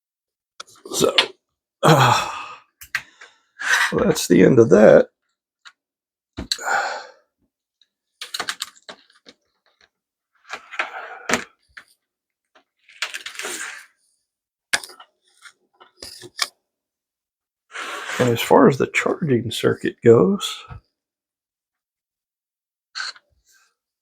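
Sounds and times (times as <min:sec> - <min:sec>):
small objects clicking and knocking: 0:08.2 - 0:11.9, 0:12.6 - 0:13.8, 0:14.7 - 0:16.5.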